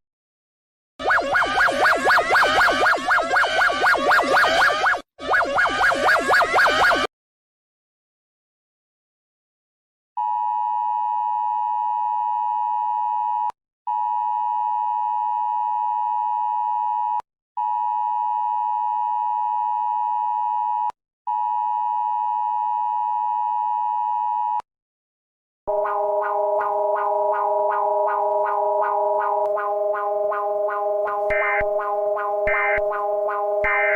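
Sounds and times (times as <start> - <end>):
harsh two-pitch alert tone: 1.0 - 7.1, 25.7 - 33.9.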